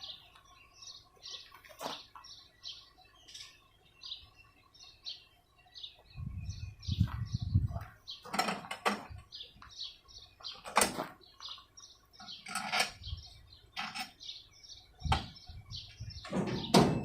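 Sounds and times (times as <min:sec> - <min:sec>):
birds chirping: 0:00.0 - 0:17.0
sharp knocks and clunks: 0:15.0 - 0:15.4, 0:16.2 - 0:17.0.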